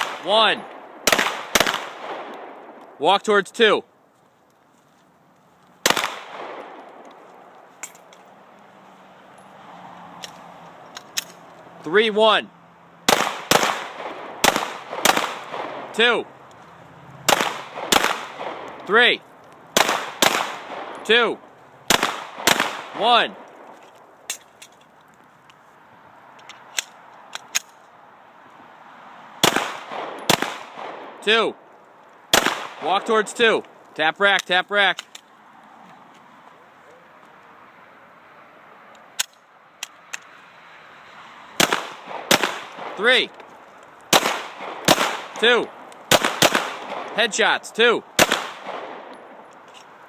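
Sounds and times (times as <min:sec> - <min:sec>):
distant gunshots: 0:00.0 - 0:02.8, 0:05.8 - 0:07.0, 0:13.1 - 0:16.1, 0:17.2 - 0:18.8, 0:19.8 - 0:21.0, 0:21.9 - 0:23.5, 0:29.4 - 0:31.2, 0:32.3 - 0:33.2, 0:41.6 - 0:43.0, 0:44.1 - 0:47.3, 0:48.2 - 0:49.4
pistol shots echoing: 0:00.0 - 0:02.9, 0:05.8 - 0:07.1, 0:13.1 - 0:16.2, 0:17.2 - 0:19.1, 0:19.8 - 0:21.3, 0:21.9 - 0:23.7, 0:29.4 - 0:31.4, 0:32.3 - 0:33.5, 0:41.6 - 0:43.4, 0:44.1 - 0:47.4, 0:48.1 - 0:49.5.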